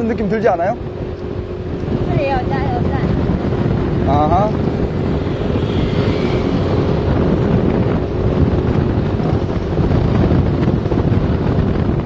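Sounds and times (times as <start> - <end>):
moving vehicle drone: 0.0 - 12.0
wind buffeting microphone: 0.0 - 12.0.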